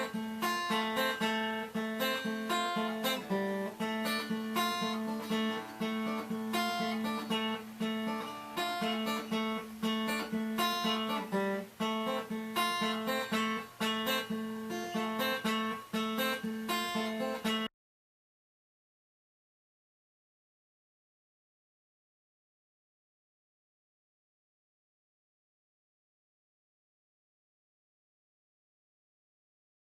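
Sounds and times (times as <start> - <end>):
acoustic guitar plucking: 0.0 - 17.7.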